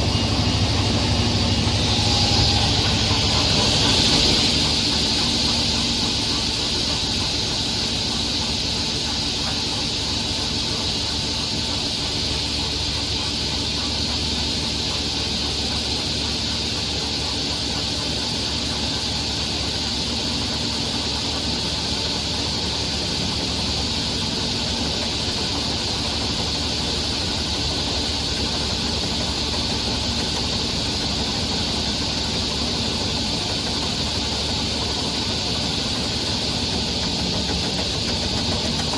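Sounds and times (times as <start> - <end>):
saw machine running: 0.0 - 13.0, 22.8 - 38.9.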